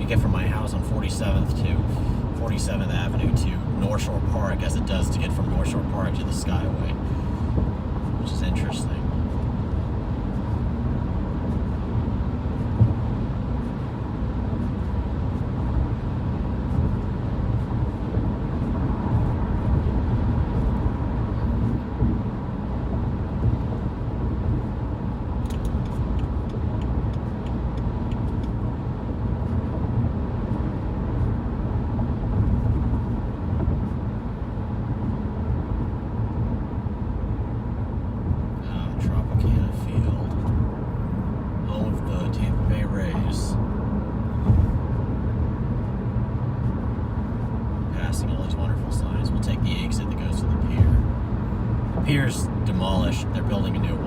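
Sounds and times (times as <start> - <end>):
car road and engine rumble: 0.0 - 54.0.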